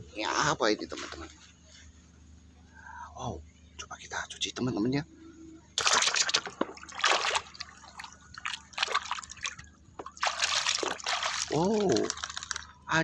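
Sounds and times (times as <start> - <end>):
water splashing and trickling: 5.8 - 12.9.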